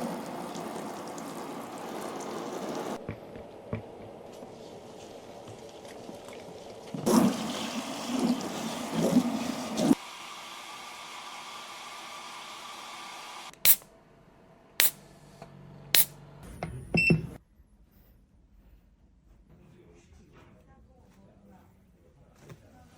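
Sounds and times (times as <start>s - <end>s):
water running and splashing: 0.0s - 12.0s.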